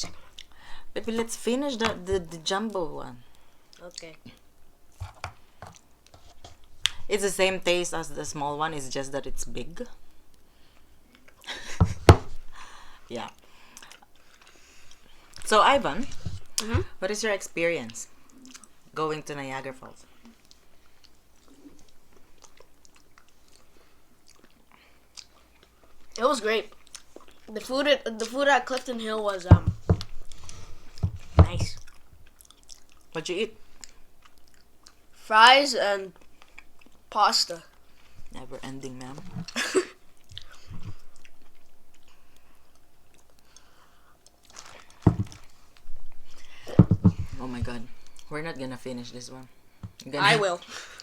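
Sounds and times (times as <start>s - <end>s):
person chewing: 18.2s - 18.9s, 20.2s - 27.5s, 31.8s - 35.2s, 36.2s - 37.0s, 39.4s - 46.6s.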